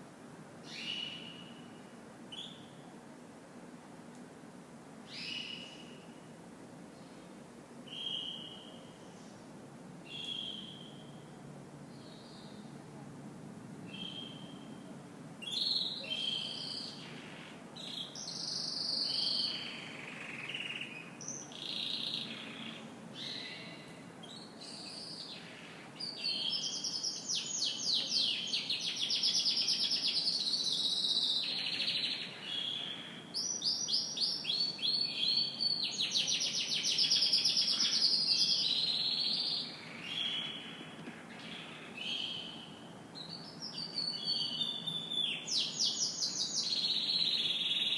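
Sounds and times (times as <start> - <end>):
canary singing: 10.1 - 11.2, 15.4 - 40.8, 41.5 - 47.9.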